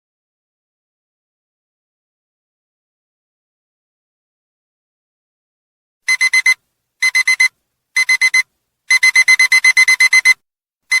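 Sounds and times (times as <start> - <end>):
alarm clock beeping: 6.1 - 11.0.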